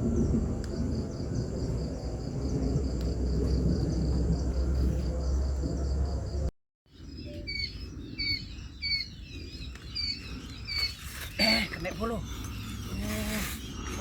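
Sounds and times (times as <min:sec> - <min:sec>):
low rumbling noise: 0:00.0 - 0:10.8
bird chirping: 0:00.1 - 0:14.0.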